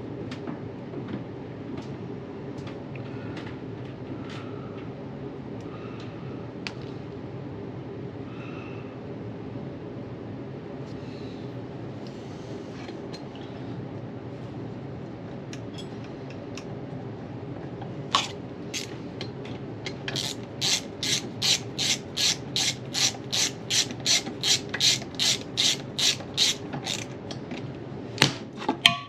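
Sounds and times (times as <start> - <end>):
socket ratchet clicking: 18.2 - 18.9, 20.1 - 27.1.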